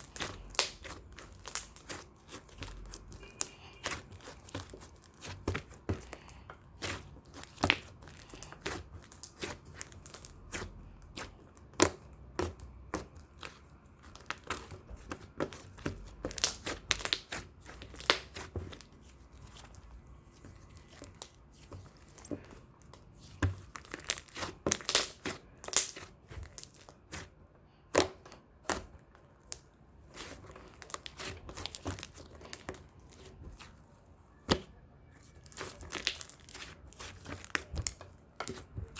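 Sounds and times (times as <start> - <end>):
slime sticky pops and crackles: 0.0 - 6.1, 6.8 - 18.8, 22.8 - 27.2, 35.4 - 38.6.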